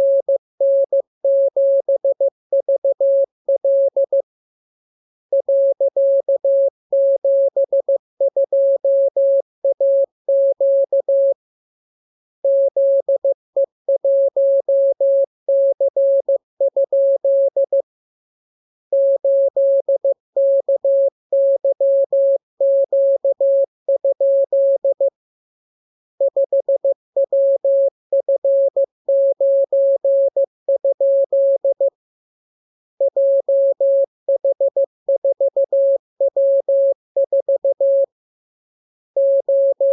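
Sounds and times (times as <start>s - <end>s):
morse code tone beeping: 39.2s - 39.9s.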